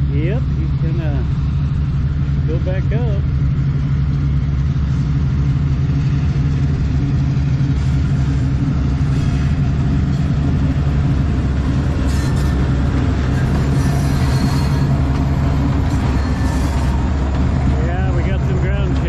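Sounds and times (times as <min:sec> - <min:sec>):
diesel locomotive engine drone: 0:00.0 - 0:19.0.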